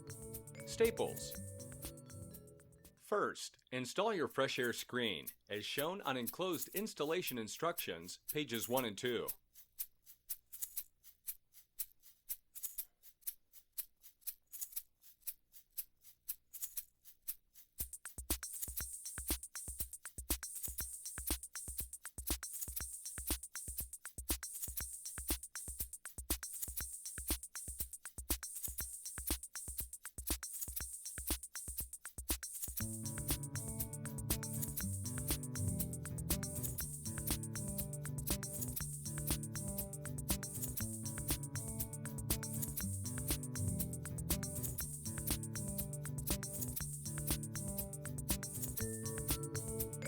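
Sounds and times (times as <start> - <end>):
low drum beat: 0.0 - 2.4, 32.8 - 50.0
high percussion: 0.0 - 3.0, 17.8 - 50.0
shaker percussion beat: 0.0 - 3.0, 4.6 - 50.0.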